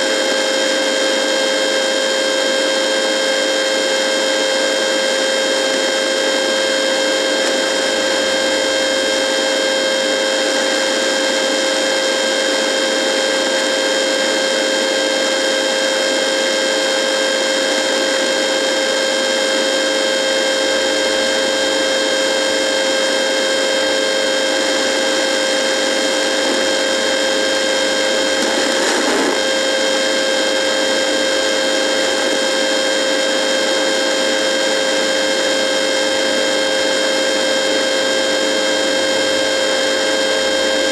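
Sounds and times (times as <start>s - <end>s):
radio electrical buzz: 3.2s - 9.4s, 16.6s - 19.8s, 23.3s - 34.0s
static hiss: 28.2s - 29.5s.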